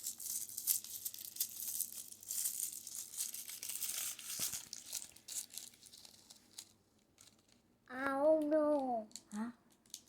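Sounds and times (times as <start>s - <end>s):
plastic packaging crinkling: 0.0s - 7.6s.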